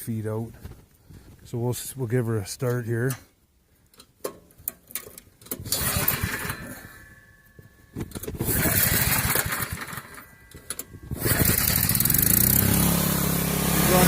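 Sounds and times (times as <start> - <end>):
small engine starting and running: 5.5 - 7.2, 8.1 - 14.0.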